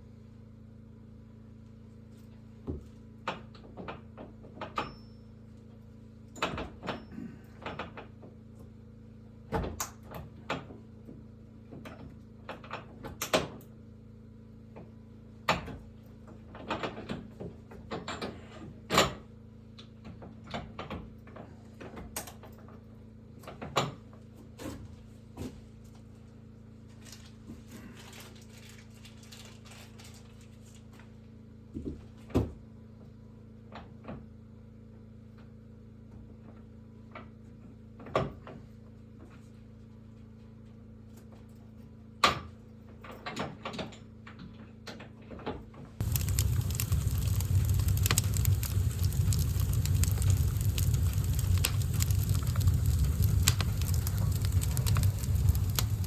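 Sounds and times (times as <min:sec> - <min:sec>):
loud crackling rushing noise: 0:46.0 - 0:56.0.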